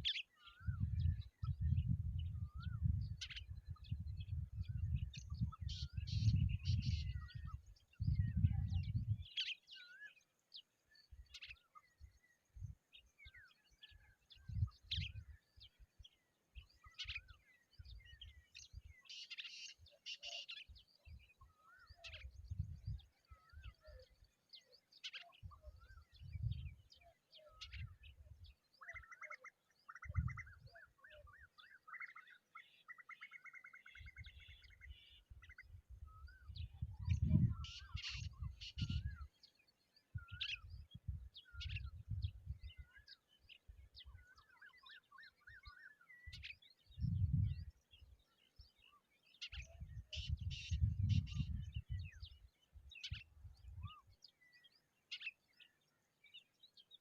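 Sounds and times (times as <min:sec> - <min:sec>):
birds chirping and calling: 0:00.0 - 0:57.0
wind buffeting microphone: 0:00.6 - 0:09.4, 0:14.4 - 0:15.4, 0:22.2 - 0:23.1, 0:25.4 - 0:26.9, 0:30.0 - 0:30.7, 0:34.1 - 0:39.3, 0:40.1 - 0:42.9, 0:46.3 - 0:47.9, 0:49.5 - 0:54.2.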